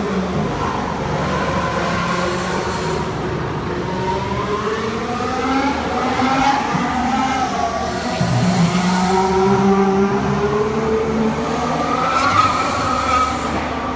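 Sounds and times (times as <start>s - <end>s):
racing car engines accelerating: 0.0s - 13.9s.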